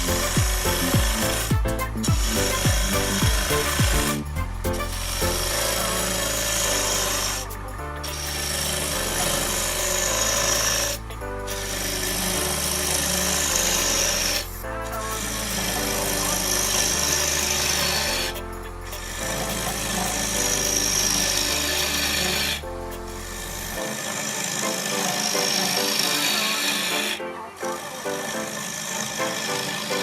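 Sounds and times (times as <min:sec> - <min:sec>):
background music with bass line: 0:00.0 - 0:24.0.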